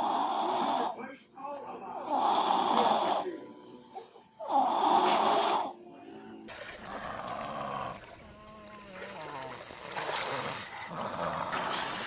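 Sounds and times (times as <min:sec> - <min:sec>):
baby snoring: 0:00.0 - 0:01.0, 0:02.0 - 0:03.3, 0:04.4 - 0:05.7, 0:06.8 - 0:12.0.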